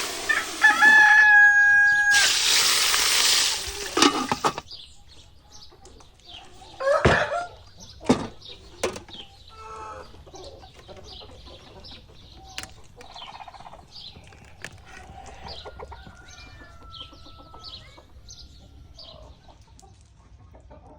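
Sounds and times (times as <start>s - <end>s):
chickens clucking: 0.0s - 20.9s
sharp knocks: 7.0s - 7.4s.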